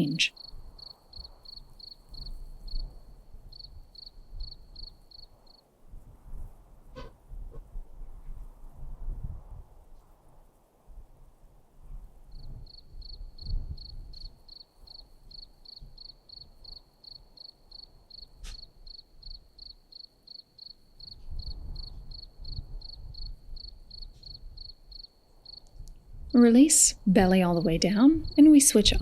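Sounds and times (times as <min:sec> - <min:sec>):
cricket chirping: 0:00.3 - 0:05.6, 0:12.3 - 0:26.7, 0:27.4 - 0:29.0.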